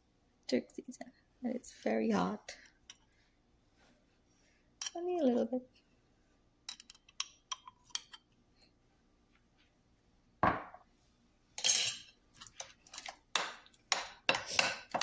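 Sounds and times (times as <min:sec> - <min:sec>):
utensils clinking on glass: 0:11.6 - 0:12.1.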